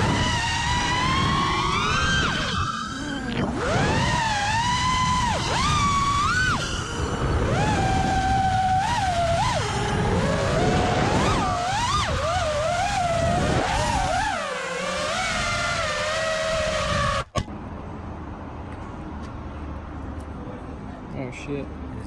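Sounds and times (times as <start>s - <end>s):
quadcopter motors whining: 0.0s - 17.4s
wind noise: 0.0s - 17.5s.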